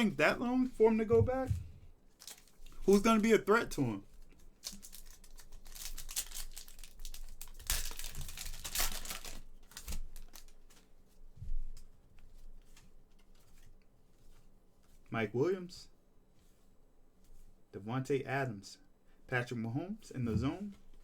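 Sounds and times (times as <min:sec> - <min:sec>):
card pack wrapper crinkling: 0:02.2 - 0:03.5, 0:04.4 - 0:10.8.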